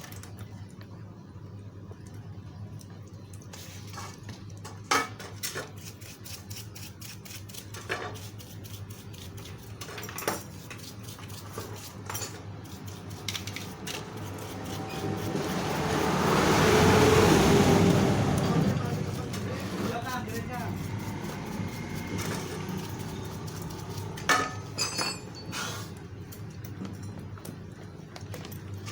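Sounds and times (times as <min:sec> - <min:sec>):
metal parts and tools clinking: 0:09.4 - 0:15.8, 0:18.4 - 0:28.9
steady low hum: 0:10.6 - 0:28.9
rushing noise: 0:14.1 - 0:24.3.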